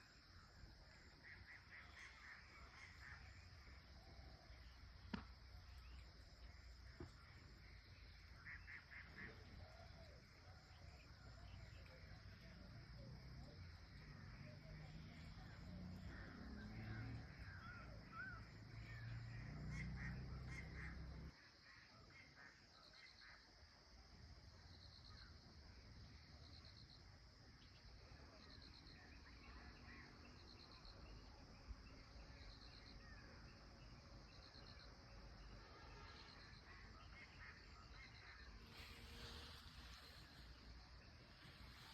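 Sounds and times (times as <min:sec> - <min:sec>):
faint bird calls: 0:00.0 - 0:23.5, 0:35.6 - 0:41.9
faint bird chirps: 0:24.6 - 0:41.9.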